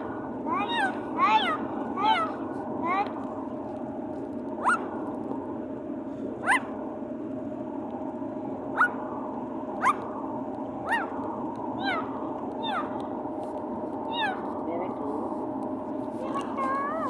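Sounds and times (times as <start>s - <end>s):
parrot calling: 0.0s - 3.2s, 4.6s - 5.2s, 6.4s - 6.8s, 8.7s - 13.2s, 14.0s - 14.6s.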